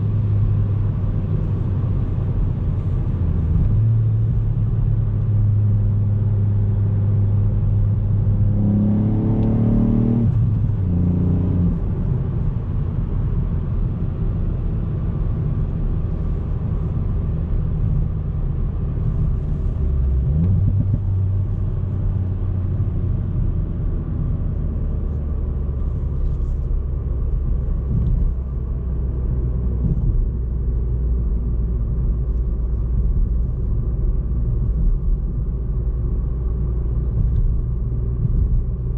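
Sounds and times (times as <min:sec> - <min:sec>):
car engine revving: 0:00.0 - 0:13.4
road noise while driving: 0:00.0 - 0:38.9.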